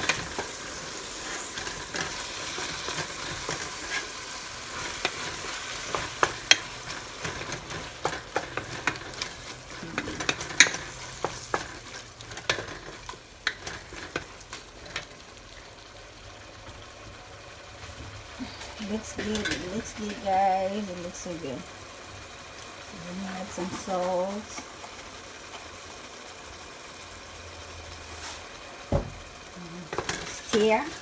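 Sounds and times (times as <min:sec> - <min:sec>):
spoon scraping pan: 0:00.0 - 0:15.2, 0:18.4 - 0:21.6, 0:29.8 - 0:31.0
vegetables sizzling in hot oil: 0:00.0 - 0:31.0.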